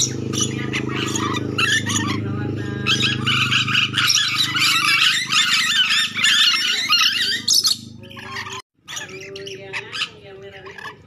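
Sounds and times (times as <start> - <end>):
low hum: 0.0 - 8.6
lorikeets screeching: 0.0 - 11.0.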